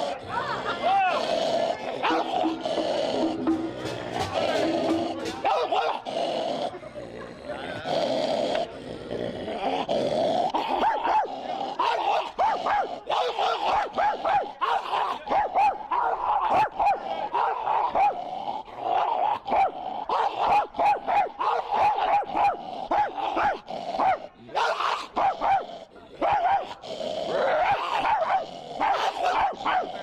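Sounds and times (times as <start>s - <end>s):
man imitating dog barking: 2.0s - 6.0s.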